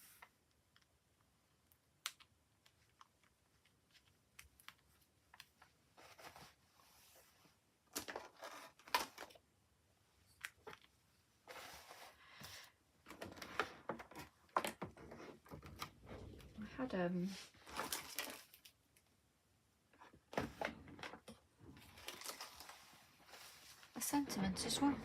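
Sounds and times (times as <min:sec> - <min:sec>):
paper rustling: 0:17.3 - 0:18.8, 0:21.8 - 0:24.9.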